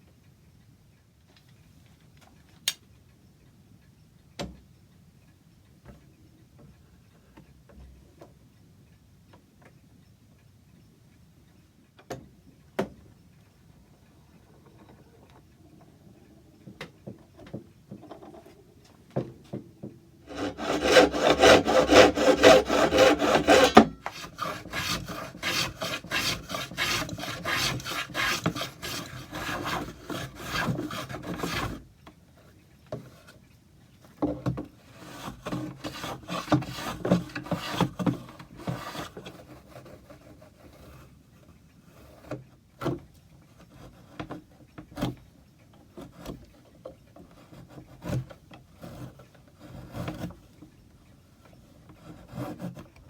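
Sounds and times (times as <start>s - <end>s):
sanding wood by hand: 20.3s - 31.8s.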